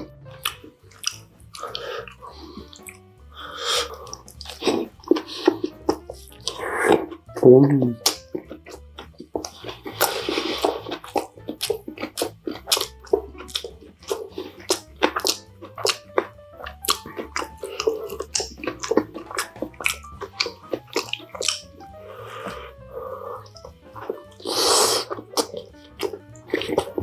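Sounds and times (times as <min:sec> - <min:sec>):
close chewing with mouth clicks: 0:00.3 - 0:27.0.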